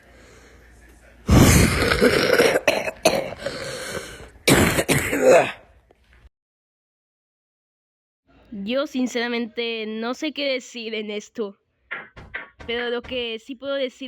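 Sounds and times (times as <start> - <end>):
person coughing: 1.3 - 3.7, 4.5 - 5.7.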